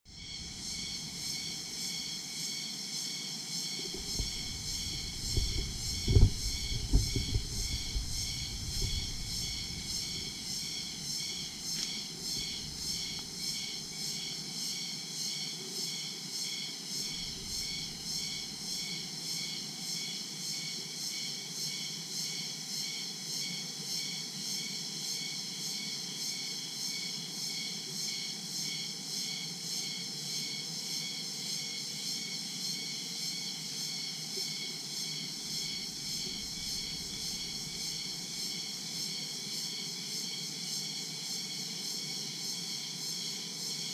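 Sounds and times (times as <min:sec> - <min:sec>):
crickets and insects chirping: 0:00.1 - 0:43.9
low rumble: 0:03.9 - 0:10.6.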